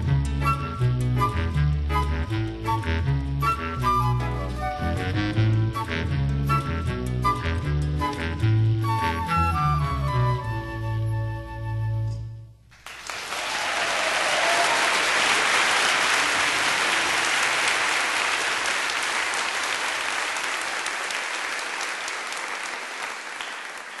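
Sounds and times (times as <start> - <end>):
audience applauding: 12.7 - 24.0.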